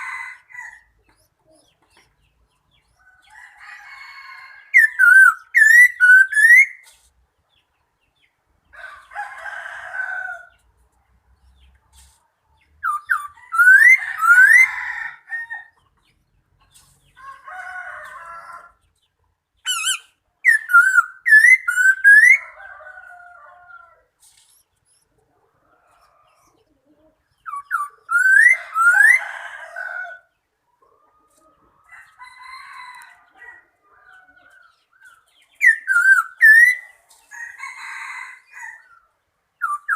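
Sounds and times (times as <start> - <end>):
bird whistling: 4.8 - 6.8, 19.7 - 22.4, 27.5 - 29.0, 35.6 - 36.8, 39.6 - 39.9.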